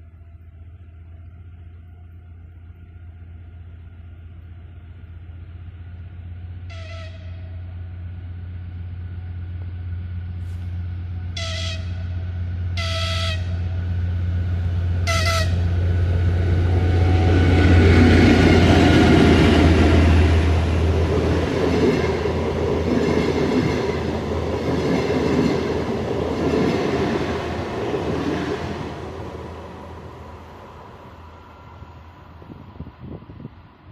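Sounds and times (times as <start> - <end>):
diesel locomotive engine drone: 0.0 - 33.9
train cars rumbling past: 0.0 - 33.9
locomotive horn blasts: 6.6 - 7.8, 10.4 - 13.9, 15.0 - 15.9, 16.5 - 18.0.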